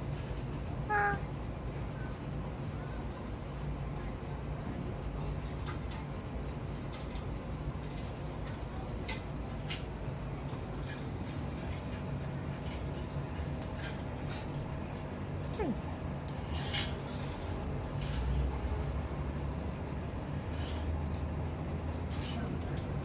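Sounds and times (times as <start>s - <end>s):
steady low hum: 0.0s - 23.0s
light clicks and rustles: 4.0s - 18.7s, 19.6s - 23.0s.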